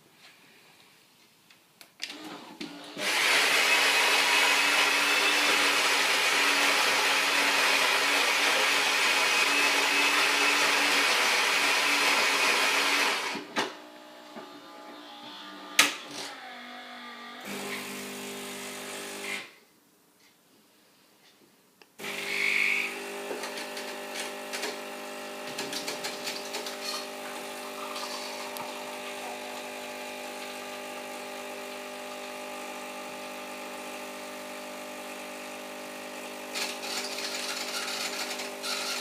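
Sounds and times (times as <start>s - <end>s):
espresso machine whirring: 2.9s - 16.0s, 22.0s - 39.0s.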